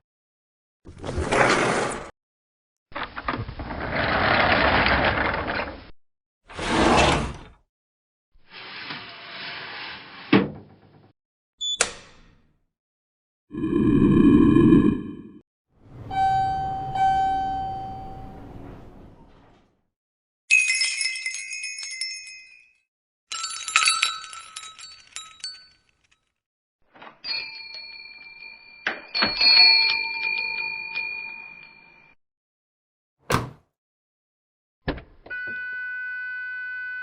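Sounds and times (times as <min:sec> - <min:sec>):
elevator doors sliding: 0:15.8 - 0:19.8
elevator chime: 0:15.9 - 0:19.2
door bells jingling: 0:16.1 - 0:18.5, 0:20.5 - 0:26.2, 0:27.2 - 0:32.0.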